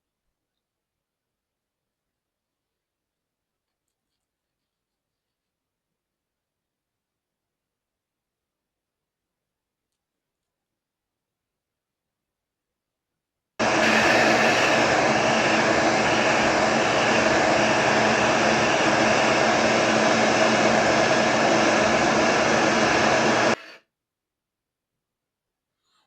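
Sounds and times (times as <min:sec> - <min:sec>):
heat gun fan blowing: 0:13.6 - 0:23.6.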